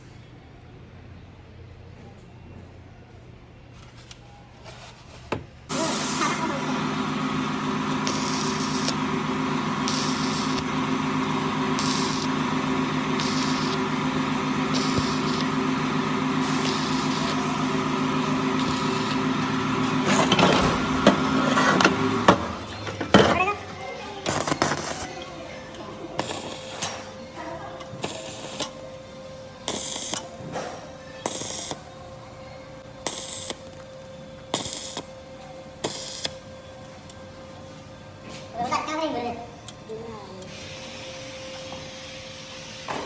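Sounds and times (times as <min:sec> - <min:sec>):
car engine humming and hissing: 0:05.7 - 0:23.5.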